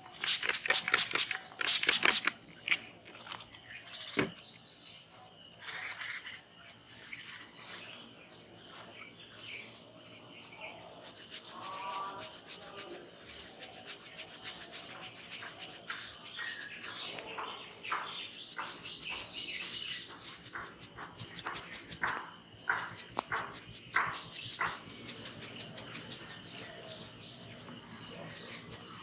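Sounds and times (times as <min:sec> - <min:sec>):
hands rubbing hair: 0:00.3 - 0:02.3, 0:10.3 - 0:17.2, 0:18.1 - 0:29.0.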